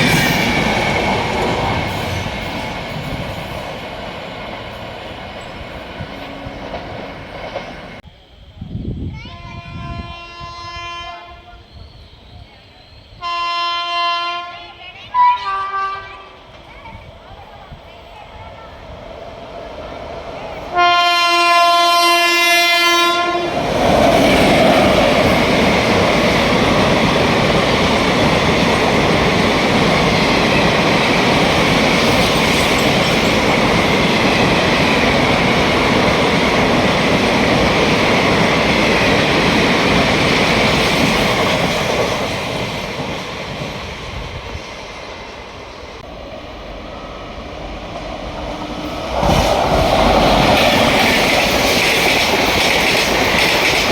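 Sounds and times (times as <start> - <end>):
train rushing past: 0.0 - 8.0, 8.6 - 53.9
locomotive horn blast: 9.3 - 11.6, 13.2 - 16.3, 20.7 - 23.6.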